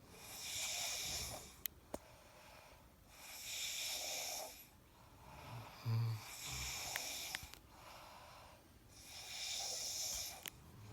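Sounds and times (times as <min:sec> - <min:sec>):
people snoring: 0:00.2 - 0:01.6, 0:05.4 - 0:07.5, 0:09.0 - 0:10.9.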